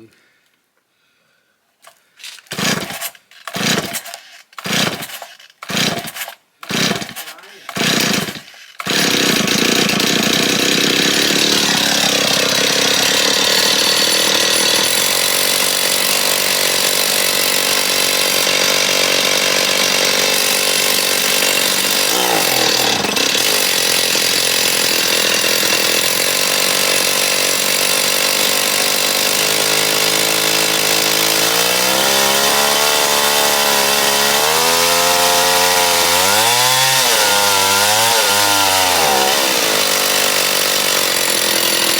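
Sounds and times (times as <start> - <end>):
chainsaw engine revving: 2.5 - 41.9.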